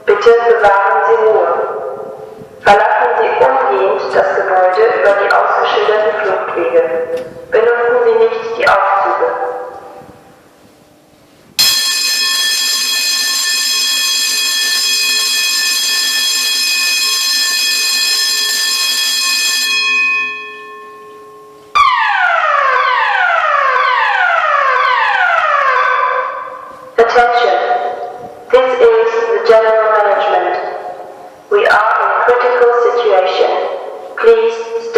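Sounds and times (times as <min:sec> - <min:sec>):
falling alarm tone: 0:11.6 - 0:26.8
steady electronic alarm tone: 0:11.6 - 0:26.9.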